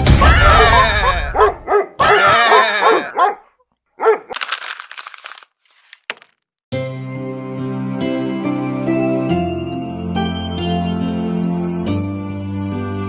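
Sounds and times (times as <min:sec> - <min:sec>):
dog yelping barks: 0:00.4 - 0:04.4.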